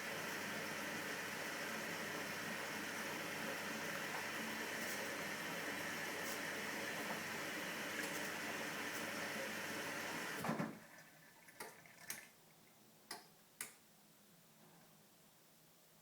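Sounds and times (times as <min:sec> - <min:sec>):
washing machine rushing: 0:00.0 - 0:11.0.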